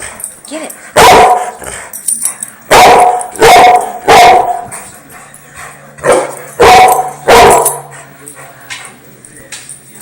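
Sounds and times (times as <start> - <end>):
dog barking: 1.0 - 1.6, 2.7 - 4.7, 6.0 - 7.9.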